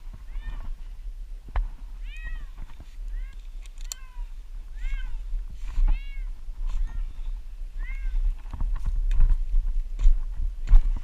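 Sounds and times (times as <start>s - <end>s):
steady low rumble: 0.0s - 11.0s
cat meowing: 0.2s - 0.8s, 2.0s - 3.4s, 4.0s - 5.2s, 5.8s - 7.2s, 7.8s - 8.2s.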